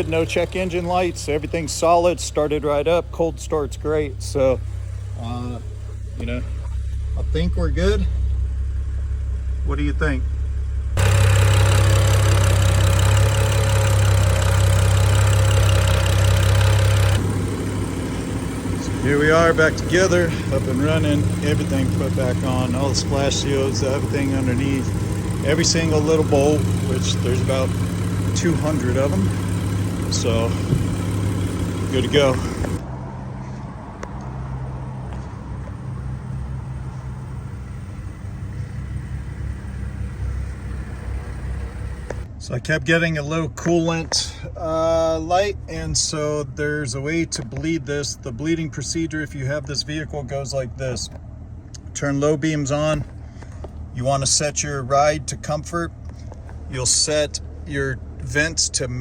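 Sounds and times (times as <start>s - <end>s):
car engine idling: 0.0s - 59.0s
injectors ticking: 11.0s - 32.8s.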